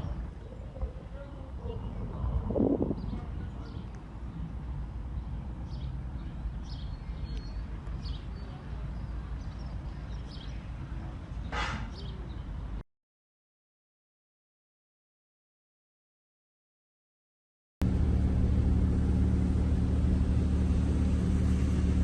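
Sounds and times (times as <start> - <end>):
birds chirping: 0.0 - 2.3, 2.9 - 12.7
low rumble: 17.8 - 22.0.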